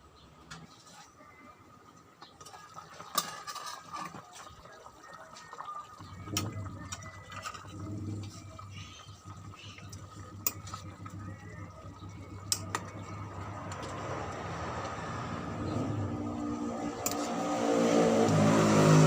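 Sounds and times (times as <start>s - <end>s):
metal utensil stirring in a pan: 2.2s - 4.7s.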